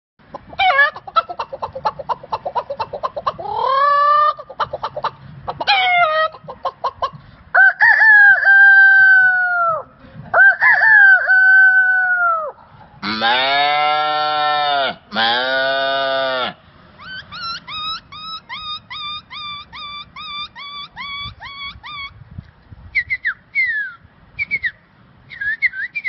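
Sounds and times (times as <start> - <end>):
man imitating chicken clucks: 0.3 - 22.2
man imitating rooster crows: 7.6 - 16.6.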